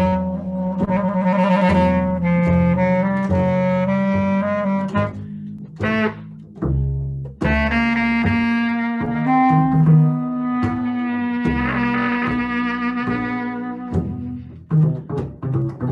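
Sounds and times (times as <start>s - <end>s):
bass clarinet: 0.0s - 15.9s
double bass: 0.0s - 15.9s.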